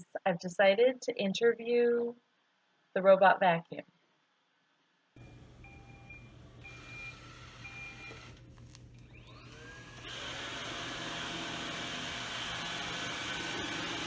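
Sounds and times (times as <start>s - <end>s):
robot vacuum humming: 5.2s - 14.0s.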